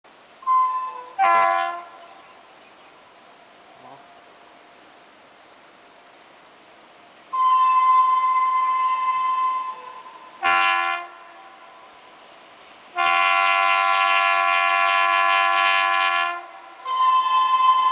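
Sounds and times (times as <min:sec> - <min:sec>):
faint steady hiss: 0:00.0 - 0:17.9
locomotive air horn blasts: 0:00.4 - 0:02.1, 0:07.3 - 0:11.7, 0:12.9 - 0:17.9.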